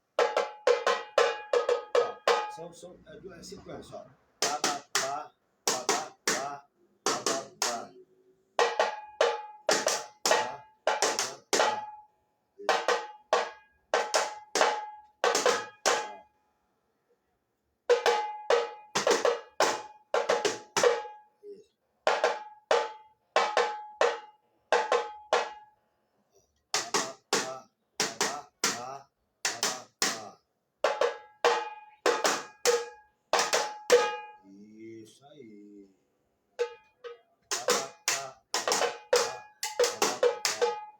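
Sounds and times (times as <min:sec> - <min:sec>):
tamborim struck with stick: 0:00.2 - 0:02.6, 0:04.4 - 0:08.0, 0:08.6 - 0:12.0, 0:12.7 - 0:16.2, 0:30.9 - 0:34.4, 0:36.6 - 0:40.9.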